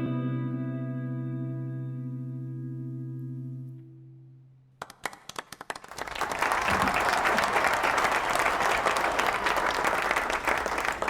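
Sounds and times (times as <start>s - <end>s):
audience applause: 4.8s - 11.0s.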